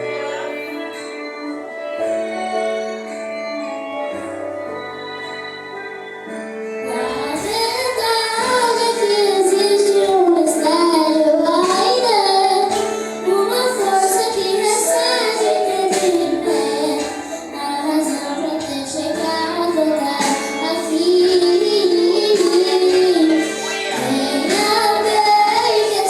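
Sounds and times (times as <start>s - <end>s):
person singing gospel song: 6.8s - 26.0s.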